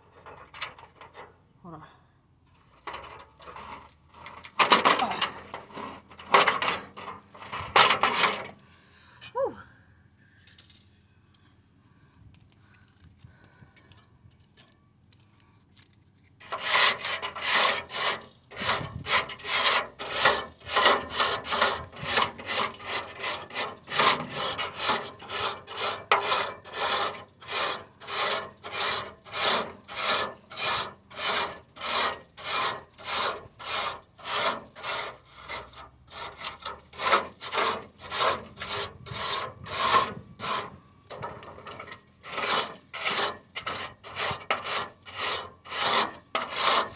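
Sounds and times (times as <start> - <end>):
rhythmic scraping strokes: 16.4 - 46.9.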